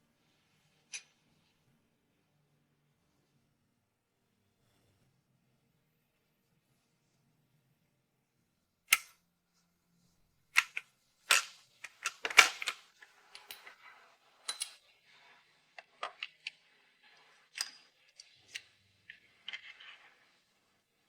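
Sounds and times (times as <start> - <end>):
metal tools clinking and clicking: 10.6 - 13.8.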